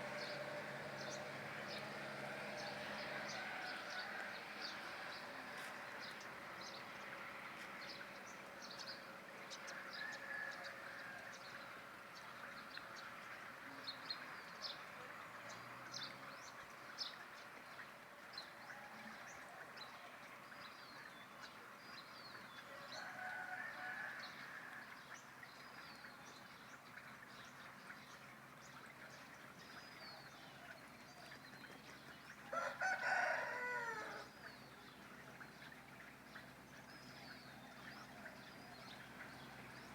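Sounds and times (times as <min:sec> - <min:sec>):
faint steady background noise: 0:00.0 - 0:39.9
rooster crowing: 0:22.8 - 0:24.4, 0:32.5 - 0:34.3.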